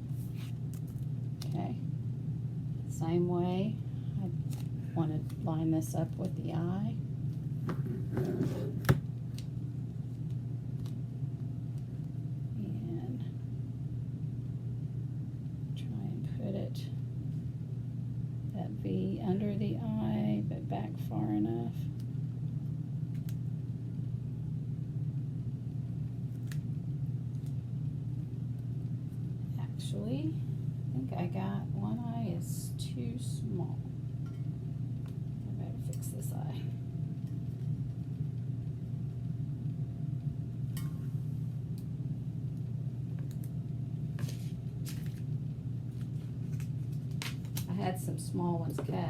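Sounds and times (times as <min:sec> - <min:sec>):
low mechanical hum: 0:00.0 - 0:49.0
small objects rustling: 0:44.2 - 0:45.3.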